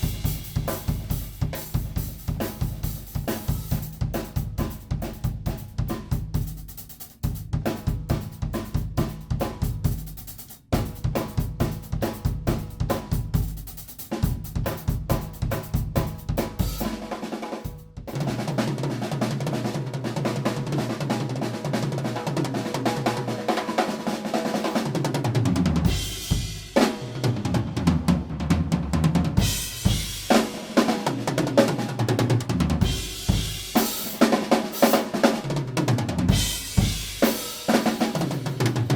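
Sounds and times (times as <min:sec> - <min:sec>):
drum kit playing: 0:00.0 - 0:38.9.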